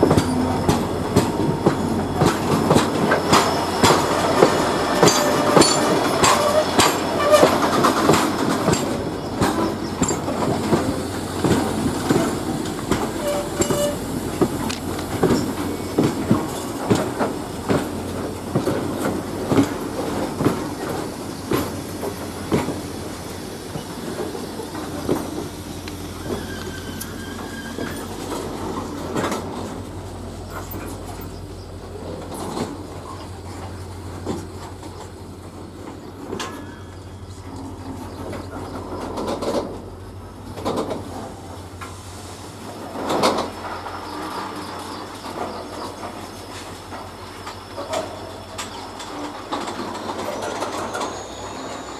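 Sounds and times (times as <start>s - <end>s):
train wheels clattering on rails: 0.0s - 51.9s
faint wheel squeal: 0.2s - 7.8s, 9.6s - 16.8s, 23.8s - 29.3s, 50.2s - 51.9s.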